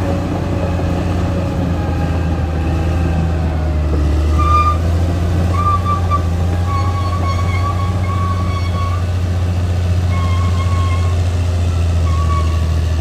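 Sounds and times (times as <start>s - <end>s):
bulldozer diesel engine running: 0.0s - 13.0s
thin high squeal: 4.4s - 4.9s, 5.5s - 9.2s, 10.0s - 11.3s, 12.0s - 12.9s.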